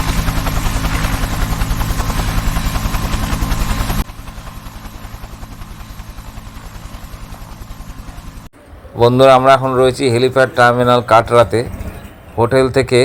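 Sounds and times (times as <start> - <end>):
helicopter rotor beating: 0.0 - 8.5.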